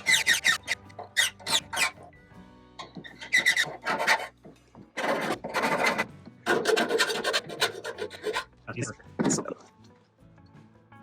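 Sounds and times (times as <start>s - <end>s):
hand file rasping on metal: 0.0s - 2.2s, 2.8s - 8.6s.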